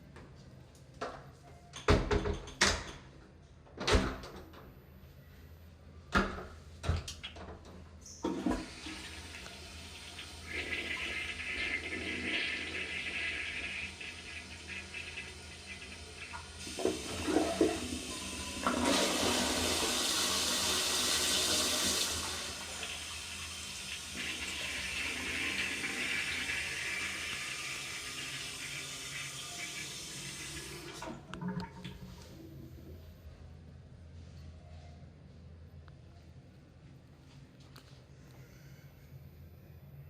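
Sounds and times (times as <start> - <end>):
toilet tank refilling hiss: 8.3 - 31.8
toilet flushing water rush: 8.3 - 32.3.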